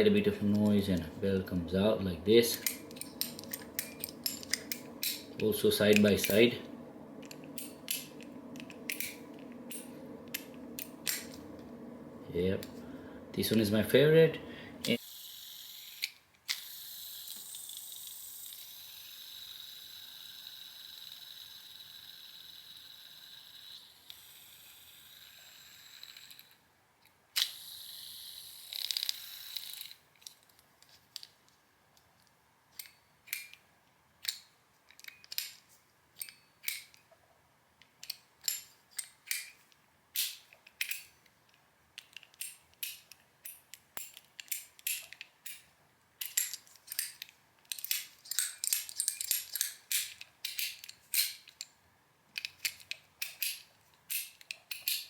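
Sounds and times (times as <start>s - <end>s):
fidget spinner whirring: 0.4s - 26.6s, 27.4s - 30.1s
metallic clicks of fidget toy: 27.4s - 30.5s.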